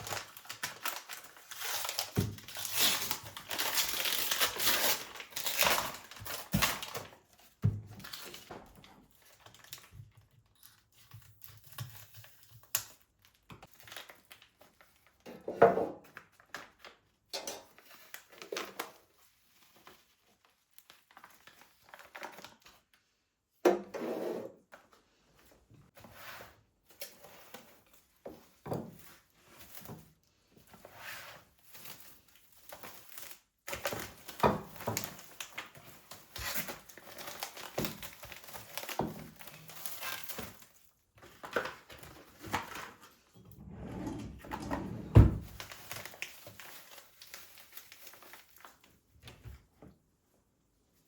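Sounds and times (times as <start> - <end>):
packaging crinkling: 31.6 - 43.2, 45.4 - 48.9.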